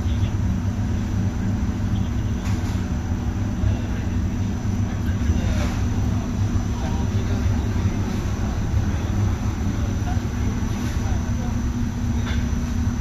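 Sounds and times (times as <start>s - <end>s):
low machinery rumble: 0.0s - 13.0s.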